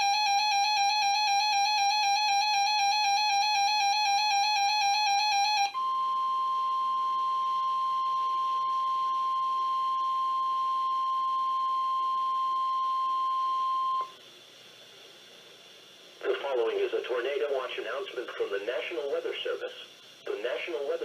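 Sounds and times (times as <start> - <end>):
high pitched alarm beep: 0.0 - 14.2
faint radio hiss: 5.7 - 21.0.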